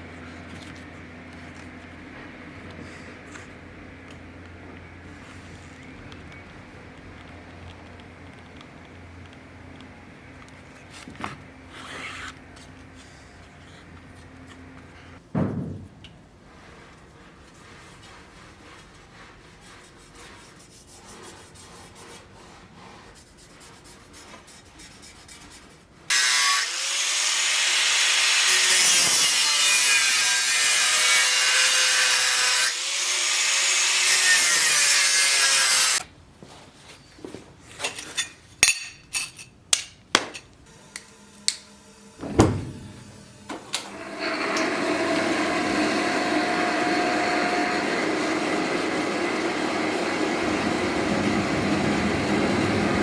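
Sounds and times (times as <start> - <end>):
power tool cutting wood: 26.1 - 36.0, 40.7 - 53.0.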